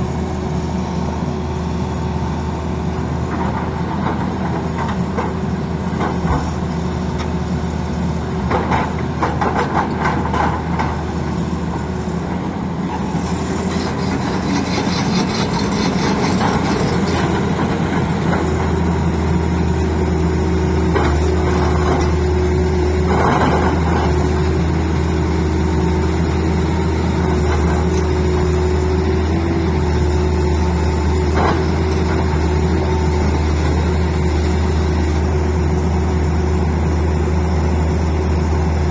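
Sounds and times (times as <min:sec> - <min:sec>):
excavator diesel engine running: 0:00.0 - 0:38.9
knocks and clatter: 0:08.4 - 0:11.1.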